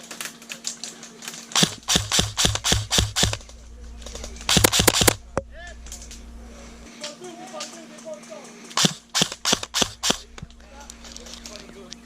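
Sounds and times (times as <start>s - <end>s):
airsoft gun shots: 1.5s - 3.5s, 4.2s - 5.4s, 8.8s - 10.4s.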